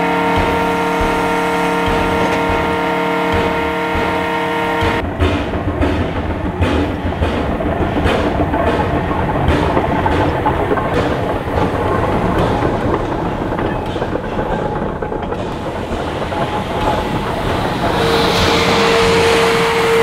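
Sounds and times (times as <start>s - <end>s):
wheels clicking over rail joints: 0.0s - 19.7s
steam train rumbling: 0.0s - 20.0s
steam hiss: 15.4s - 20.0s.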